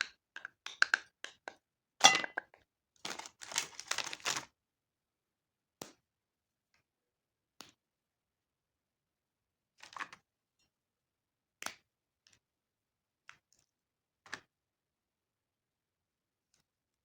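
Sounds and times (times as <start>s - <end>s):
candy packaging crinkling: 3.0s - 4.5s
packaging clicks: 3.1s - 4.5s.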